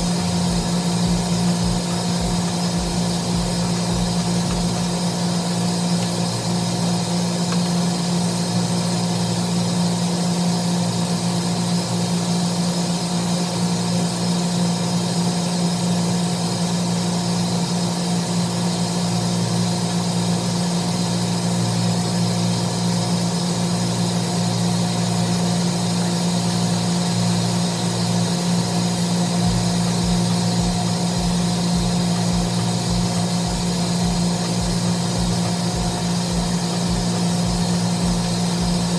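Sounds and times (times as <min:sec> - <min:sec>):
low rapid pulsing: 0:00.0 - 0:05.9, 0:29.4 - 0:38.9
machinery hum: 0:00.0 - 0:13.0, 0:23.2 - 0:38.9.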